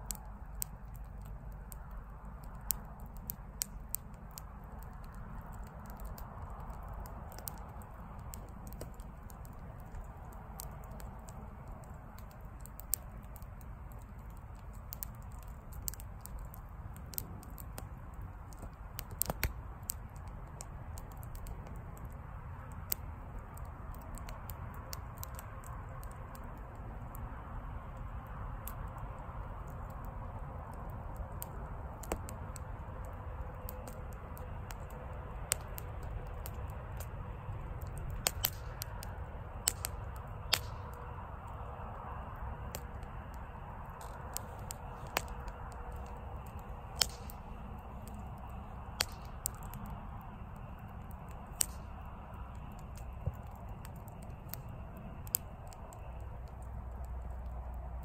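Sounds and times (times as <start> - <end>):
wood popping and crackling: 0.0 - 27.2, 27.8 - 58.0.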